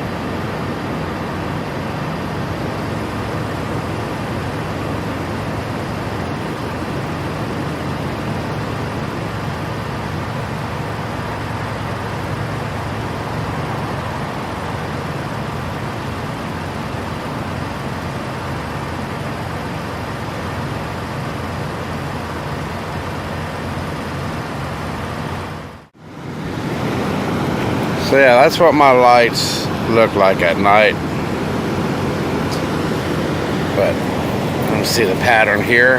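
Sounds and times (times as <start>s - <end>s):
diesel truck engine droning: 0.0s - 35.9s.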